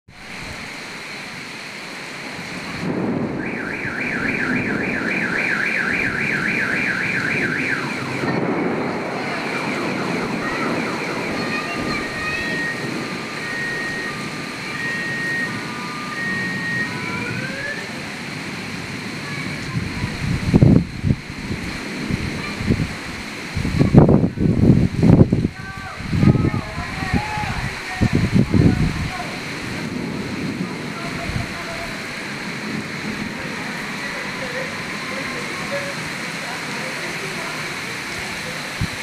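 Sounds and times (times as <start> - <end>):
heavy rain falling: 0.1 - 39.0
car alarm: 3.4 - 8.3, 9.6 - 17.8.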